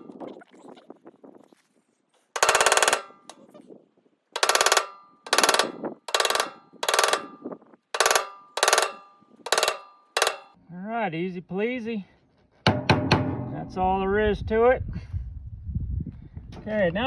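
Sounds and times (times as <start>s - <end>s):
hammer strikes on metal: 2.4s - 3.4s, 4.4s - 10.6s.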